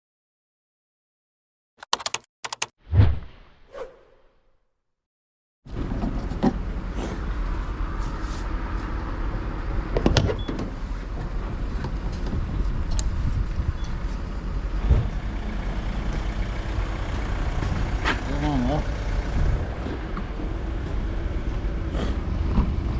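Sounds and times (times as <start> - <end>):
off-road vehicle engine rumbling: 5.7 - 22.9.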